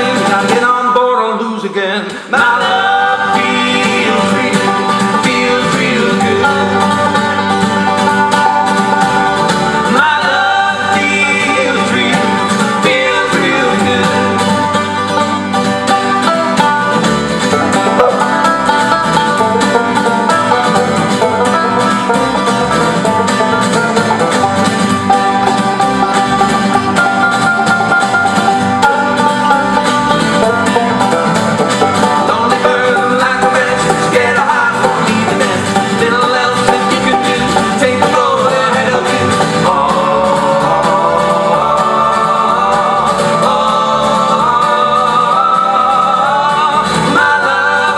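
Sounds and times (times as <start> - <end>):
acoustic folk band playing: 0.0 - 47.9
steady bass pulse: 12.2 - 32.8.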